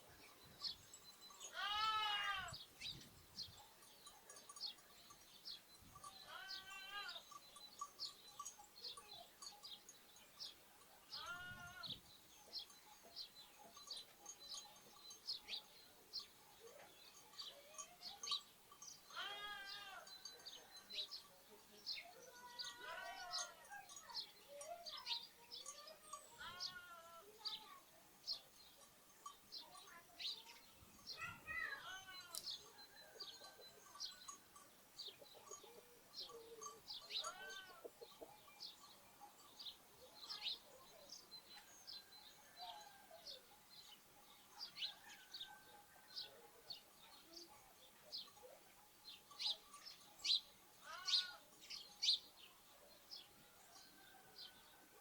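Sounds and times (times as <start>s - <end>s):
small birds chirping: 0.0s - 55.0s
lambs bleating: 1.5s - 2.6s, 6.3s - 7.2s, 11.2s - 12.0s, 19.1s - 20.1s, 31.2s - 32.5s, 37.2s - 37.9s, 50.8s - 51.5s.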